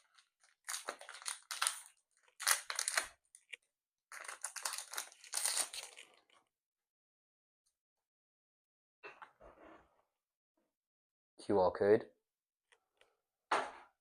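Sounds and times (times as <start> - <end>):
foil wrapper crinkling: 0.0 - 6.3.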